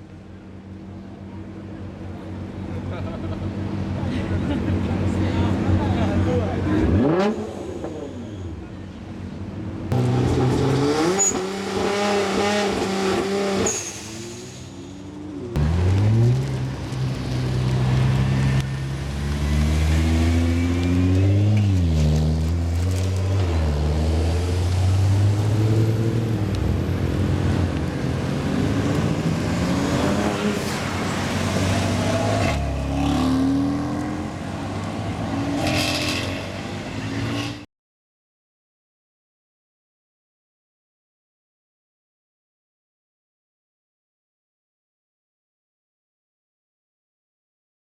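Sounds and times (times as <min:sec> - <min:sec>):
car engine revving: 0:09.9 - 0:14.8, 0:15.5 - 0:37.6.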